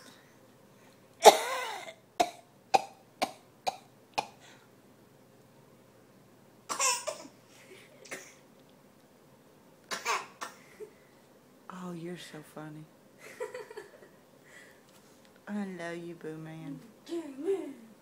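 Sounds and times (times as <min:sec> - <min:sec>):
person coughing: 0:01.2 - 0:02.4.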